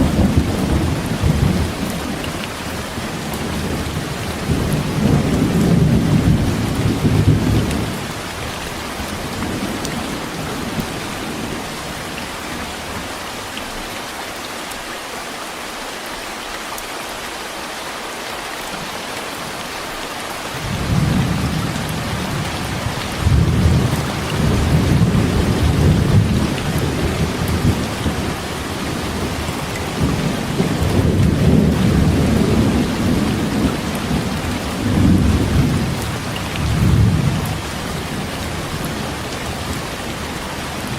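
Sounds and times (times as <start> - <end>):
rolling thunder rumbles: 0.0 - 2.3, 3.0 - 11.8, 20.6 - 39.9
heavy rain hiss: 0.0 - 40.9.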